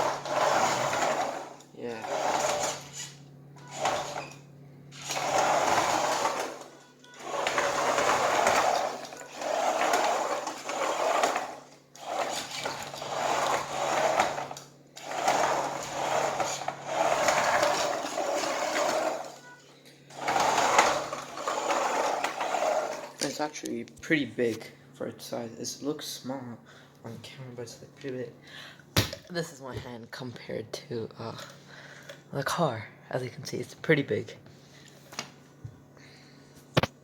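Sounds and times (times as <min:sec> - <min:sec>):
small motors whirring: 0:00.0 - 0:19.4
plastic wheels on hard floor: 0:00.0 - 0:23.4.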